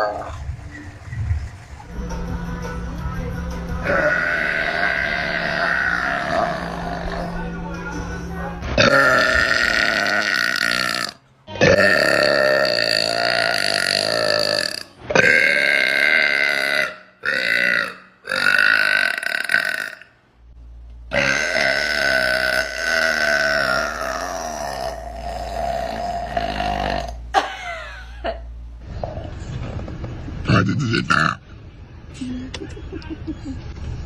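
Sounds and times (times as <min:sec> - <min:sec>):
woman burping: 0:03.8 - 0:07.3, 0:08.8 - 0:20.1, 0:21.1 - 0:28.4.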